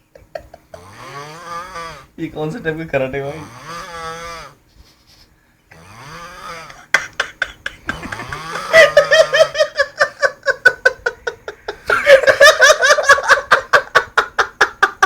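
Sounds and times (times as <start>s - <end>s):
loud hearty laughter: 6.7s - 15.0s.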